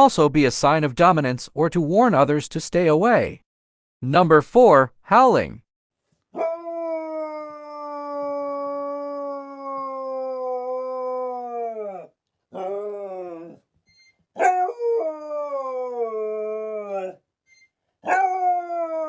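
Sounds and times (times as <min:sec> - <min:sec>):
dog howling: 0:06.4 - 0:13.6, 0:14.4 - 0:17.2, 0:18.0 - 0:19.0.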